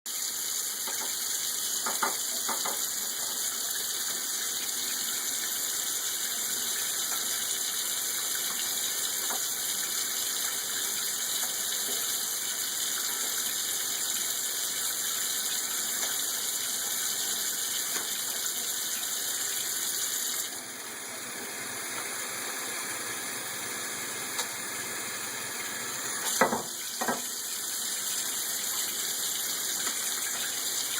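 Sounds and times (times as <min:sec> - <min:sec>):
tap water running: 0:00.1 - 0:30.9
short sharp knocks or splashes: 0:26.3 - 0:27.3.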